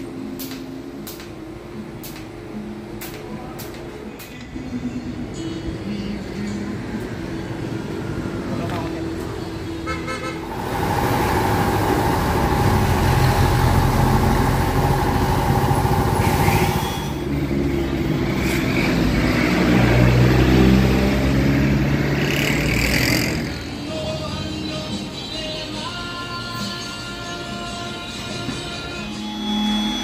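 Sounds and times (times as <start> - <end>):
motorcycle engine revving: 10.4 - 23.6.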